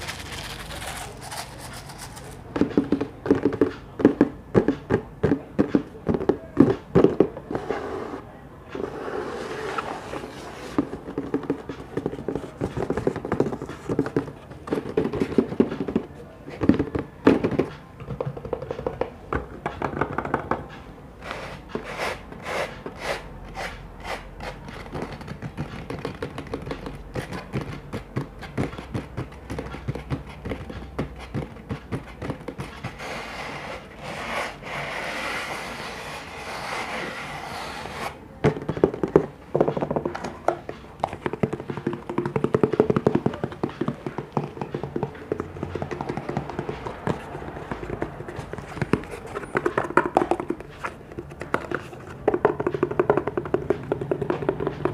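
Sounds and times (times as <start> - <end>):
tapping and knocking on objects: 2.5 - 7.5, 10.7 - 20.8, 24.7 - 33.0, 38.4 - 54.9.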